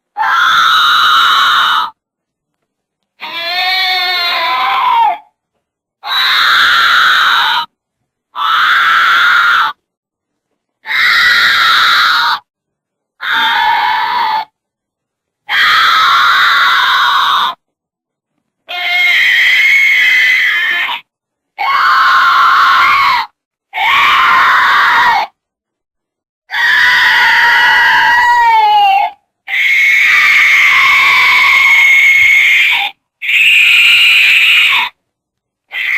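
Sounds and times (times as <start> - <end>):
goats screaming: 0.2 - 2.0, 3.2 - 5.2, 6.0 - 7.7, 8.4 - 9.8, 10.9 - 12.4, 13.2 - 14.5, 15.5 - 17.6, 18.7 - 21.0, 21.6 - 25.3, 26.5 - 35.0.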